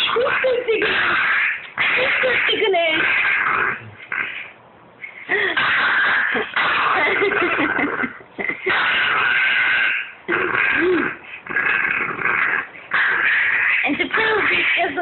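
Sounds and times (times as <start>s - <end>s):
dog wheezing huffing laugh: 5.1s - 8.9s.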